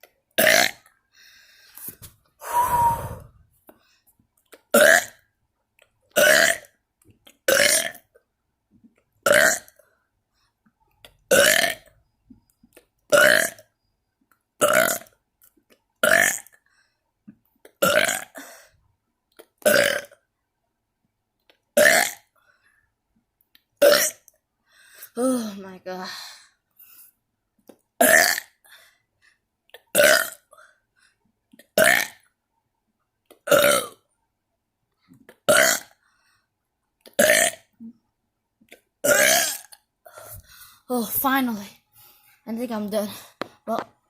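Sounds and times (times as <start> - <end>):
person burping: 0.4 - 0.9, 4.7 - 5.2, 6.1 - 6.8, 7.5 - 8.1, 9.2 - 9.8, 11.3 - 11.9, 13.1 - 13.6, 14.6 - 15.1, 16.0 - 16.6, 17.8 - 18.5, 19.6 - 20.2, 21.8 - 22.3, 23.8 - 24.3, 28.0 - 28.6, 29.8 - 30.6, 31.8 - 32.2, 33.4 - 34.0, 35.4 - 36.0, 37.1 - 37.9, 39.0 - 39.9.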